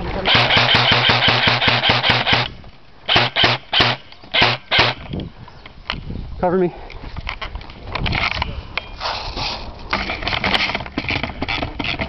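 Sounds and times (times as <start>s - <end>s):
airsoft gun firing: 0.3s - 5.0s.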